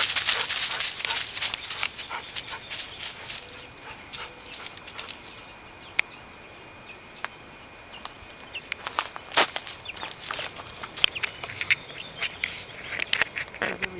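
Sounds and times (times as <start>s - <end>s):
rustling and clicks: 0.0s - 5.5s.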